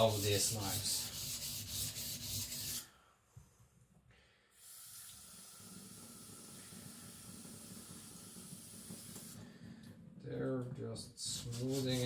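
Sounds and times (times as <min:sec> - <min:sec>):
running water hiss: 0:04.6 - 0:09.4.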